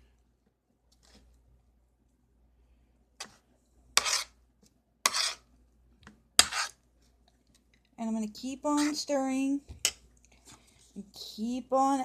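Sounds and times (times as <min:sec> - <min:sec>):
spoon scraping sticky slime: 0:04.0 - 0:04.4, 0:05.1 - 0:05.5, 0:06.4 - 0:06.8, 0:08.7 - 0:09.1.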